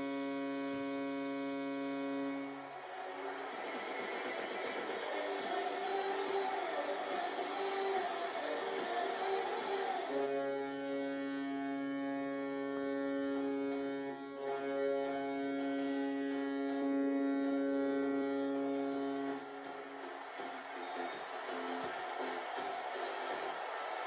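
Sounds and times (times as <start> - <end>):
goal horn blast: 0.0 - 3.0, 10.0 - 22.5.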